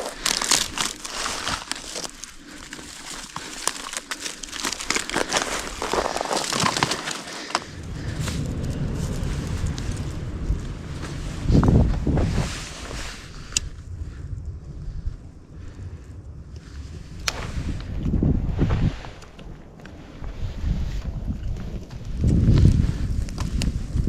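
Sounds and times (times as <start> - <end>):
material crinkling and crackling: 0.0 - 13.8
wind rumble on microphone: 0.0 - 24.0.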